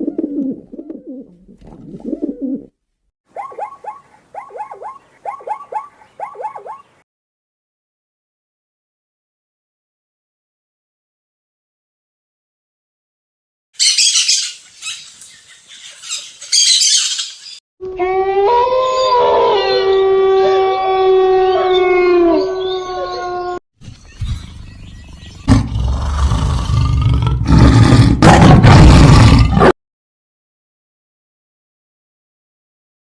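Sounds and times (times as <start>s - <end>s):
deep animal roar: 25.4s - 29.7s.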